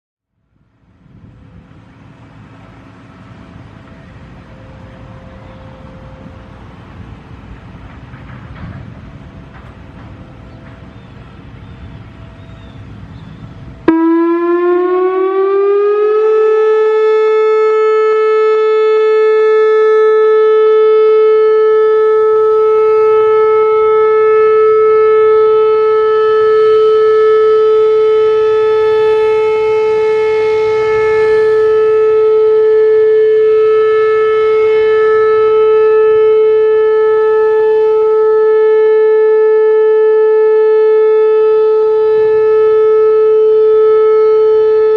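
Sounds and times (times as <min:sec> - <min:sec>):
electronic siren alert tone: 0:13.8 - 0:44.9.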